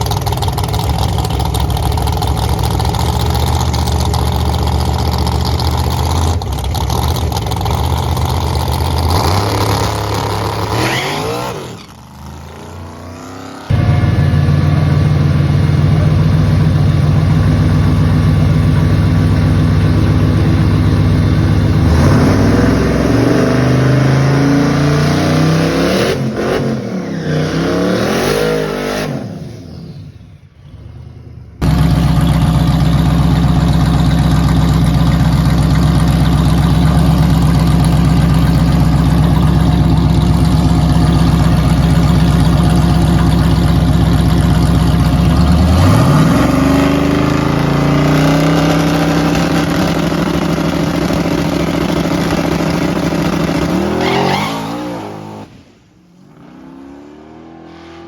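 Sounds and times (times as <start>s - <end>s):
drag-race engine launching: 0.0s - 17.2s, 36.0s - 58.0s
second engine revving: 2.3s - 29.4s, 31.3s - 55.6s.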